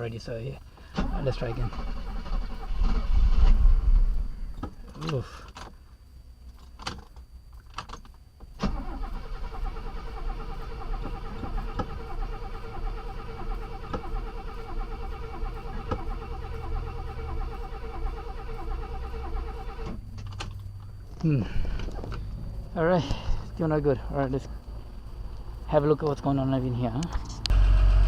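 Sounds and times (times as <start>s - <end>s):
engine cranking on starter motor: 0.8s - 5.4s, 8.6s - 20.5s.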